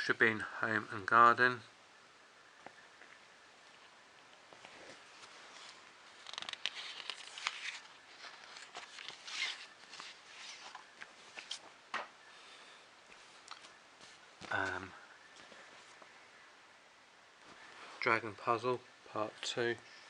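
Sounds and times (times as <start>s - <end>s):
magazine pages rustling: 4.5s - 11.8s.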